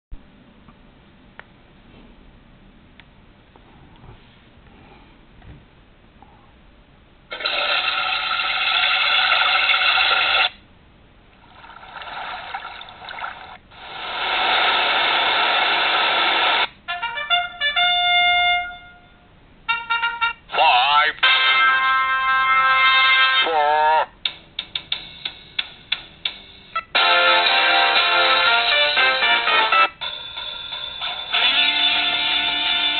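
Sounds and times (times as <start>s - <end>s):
toilet flushing through phone speaker: 7.3s - 10.5s, 11.5s - 15.1s.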